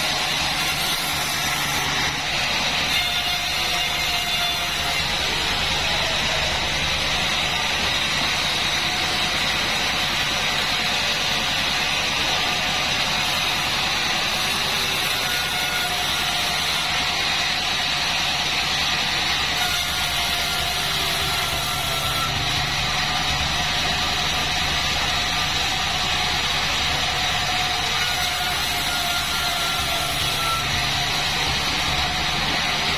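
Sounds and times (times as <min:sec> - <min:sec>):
bandsaw running: 0:00.0 - 0:32.9.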